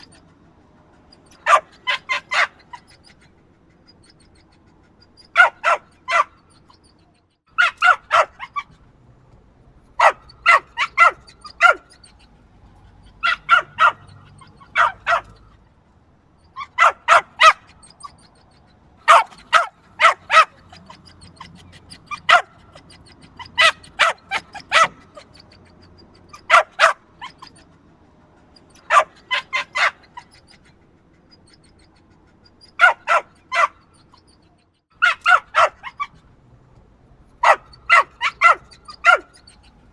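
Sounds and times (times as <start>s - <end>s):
small dog barking: 1.3s - 2.9s, 5.2s - 6.4s, 7.5s - 8.8s, 10.0s - 12.2s, 13.1s - 15.5s, 16.5s - 18.2s, 19.0s - 25.4s, 26.2s - 27.6s, 28.7s - 30.3s, 32.7s - 33.9s, 35.0s - 36.2s, 37.4s - 39.7s.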